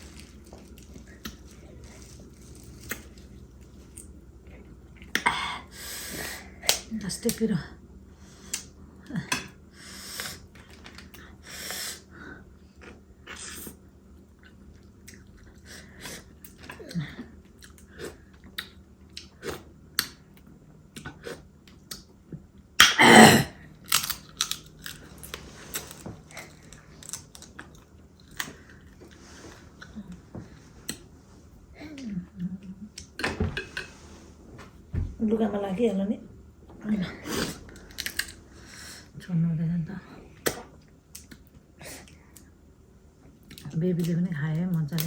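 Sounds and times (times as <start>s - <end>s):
people chewing crab: 8.2s - 22.6s, 23.6s - 31.2s, 37.2s - 39.1s
shells crunching and clicking: 23.9s - 25.2s.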